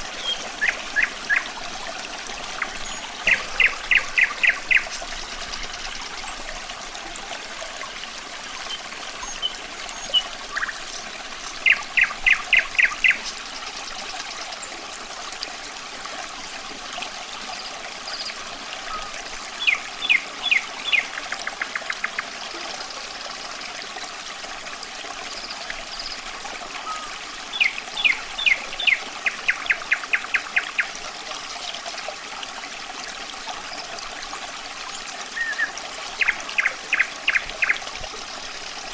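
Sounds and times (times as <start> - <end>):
water trickling: 0.0 - 38.9
nightingale singing: 0.1 - 1.7, 2.5 - 5.0.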